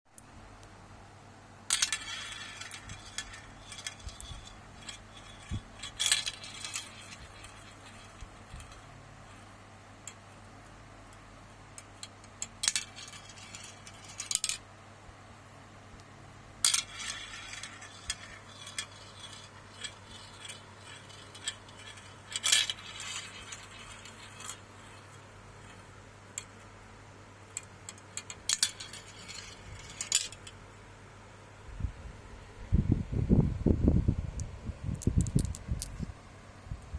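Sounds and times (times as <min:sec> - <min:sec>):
steady low hum: 0:00.1 - 0:36.9
marbles clattering down a track: 0:01.7 - 0:08.9, 0:12.4 - 0:14.6, 0:16.6 - 0:26.6, 0:27.6 - 0:30.5, 0:35.0 - 0:35.9.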